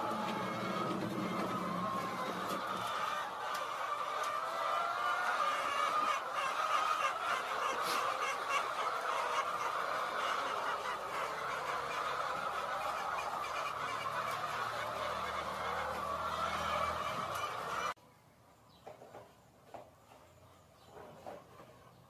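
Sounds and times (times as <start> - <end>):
flock of chickens calling: 0.0 - 18.0, 18.8 - 22.0.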